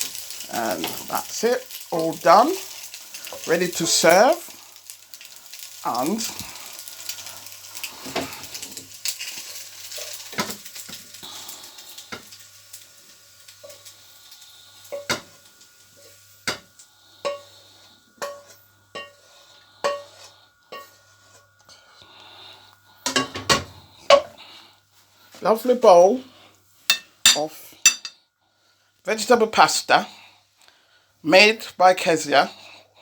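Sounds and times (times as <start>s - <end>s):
food sizzling in a frying pan: 0.0s - 21.6s, 22.4s - 33.0s
metal spoon scraping a pan: 14.8s - 15.4s, 16.0s - 21.5s, 26.9s - 28.2s
spoon clinking against cookware: 26.9s - 28.1s.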